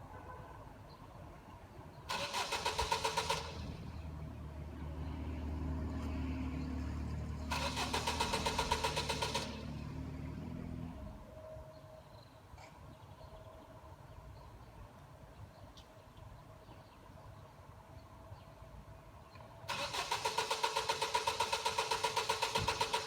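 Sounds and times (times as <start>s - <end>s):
car starter cranking: 2.1s - 3.9s, 7.5s - 10.1s, 19.7s - 23.0s
low engine running: 2.2s - 11.2s.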